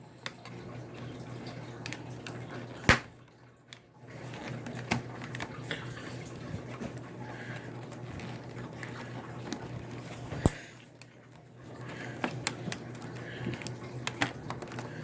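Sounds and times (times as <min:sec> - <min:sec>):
plastic parts clicking: 0:11.8 - 0:15.0.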